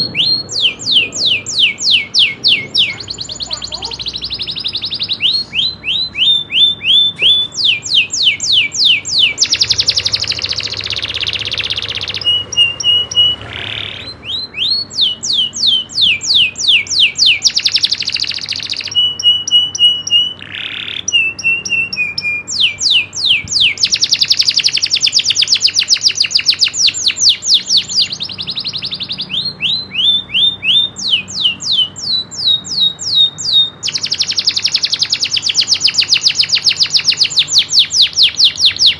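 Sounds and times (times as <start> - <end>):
canary singing trills: 0.0 - 38.9.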